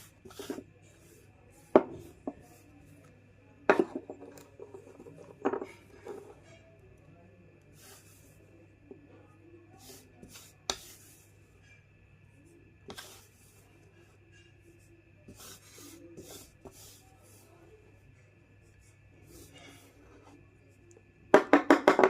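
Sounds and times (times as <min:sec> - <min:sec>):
chalk cracking: 0:00.0 - 0:02.7, 0:09.8 - 0:11.8, 0:12.8 - 0:14.5, 0:15.2 - 0:17.6, 0:18.8 - 0:20.4
chalk scraping: 0:00.0 - 0:02.7, 0:07.7 - 0:08.5, 0:09.8 - 0:11.8, 0:12.8 - 0:17.7, 0:18.6 - 0:20.5.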